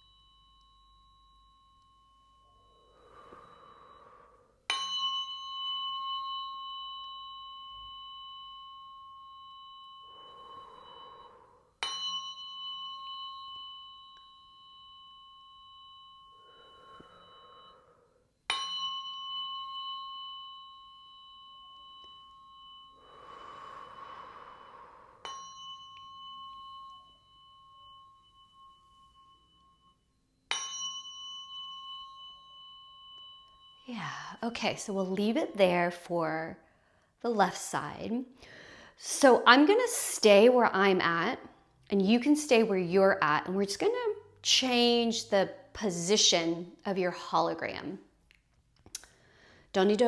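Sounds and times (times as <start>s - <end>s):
tuning fork ringing: 0.0s - 37.2s.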